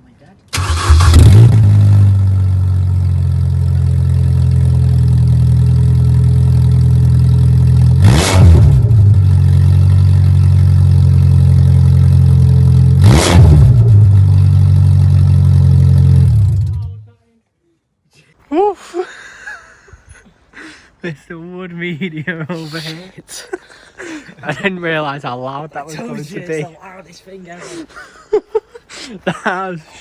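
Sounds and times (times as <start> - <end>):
engine throttle blips: 0.5 - 17.1
car engine idling loudly: 1.6 - 16.8.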